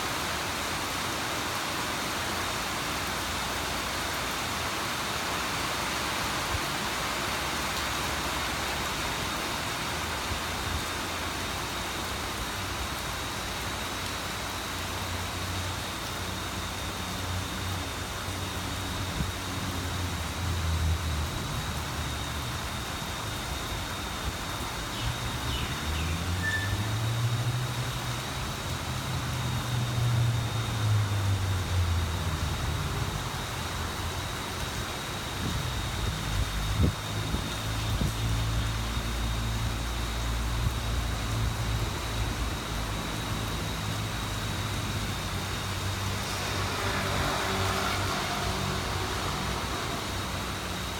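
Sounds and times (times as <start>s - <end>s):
rain falling: 0.0s - 50.9s
vehicle engine hum: 14.0s - 50.9s.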